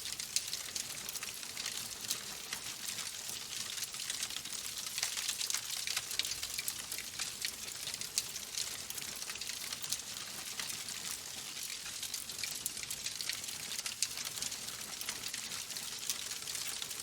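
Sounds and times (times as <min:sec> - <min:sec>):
wood fire crackling: 0:00.1 - 0:17.0.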